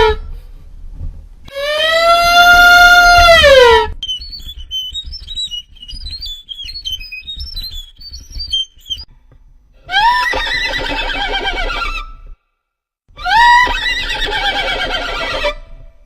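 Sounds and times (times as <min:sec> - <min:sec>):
high whistled tune: 0:04.0 - 0:09.1
horse neighing: 0:09.9 - 0:12.2, 0:13.2 - 0:15.6.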